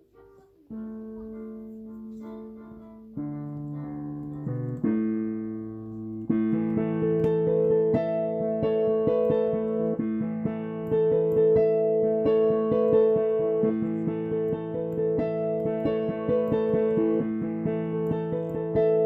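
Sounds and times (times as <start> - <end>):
keyboard playing held chords: 0.0 - 19.0
repeated keyboard chord strikes: 0.0 - 19.0.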